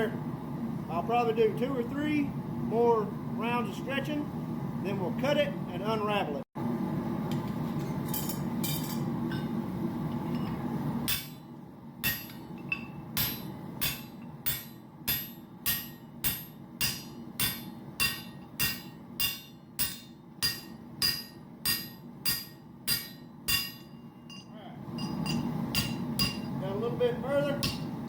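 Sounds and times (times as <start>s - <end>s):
hammer striking metal: 11.1s - 26.6s, 27.6s - 28.0s.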